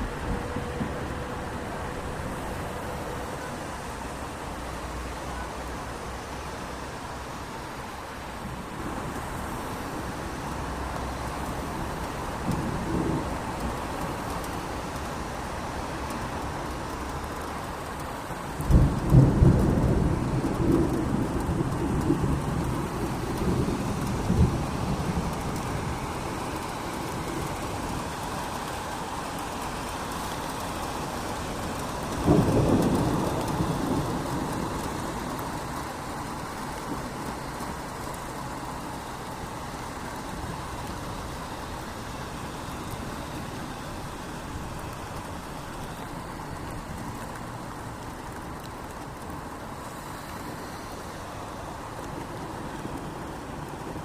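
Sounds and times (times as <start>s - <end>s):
rain falling on street: 0.0s - 54.0s
thunder rolling: 18.6s - 28.0s, 31.5s - 37.7s.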